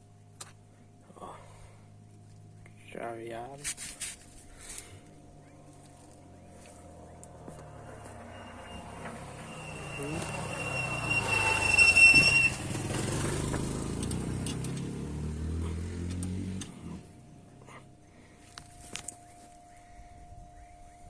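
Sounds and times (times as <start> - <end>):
diesel engine running: 4.9 - 18.7
thin high squeal: 7.6 - 13.2.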